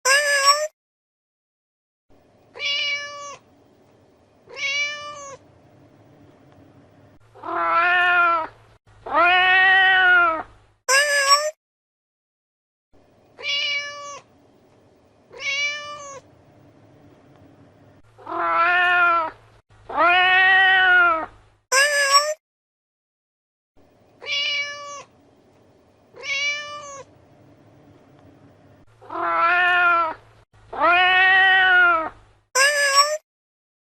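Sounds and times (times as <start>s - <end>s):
cat meowing: 0.1s - 0.7s, 2.6s - 3.4s, 4.5s - 5.4s, 7.4s - 11.6s, 13.4s - 14.3s, 15.3s - 16.3s, 18.2s - 22.4s, 24.2s - 25.1s, 26.2s - 27.1s, 29.0s - 33.2s.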